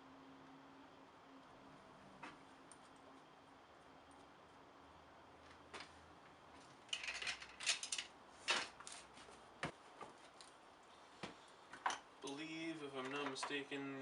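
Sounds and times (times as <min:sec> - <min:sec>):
metal bolts and tools clinking: 0:06.9 - 0:09.0.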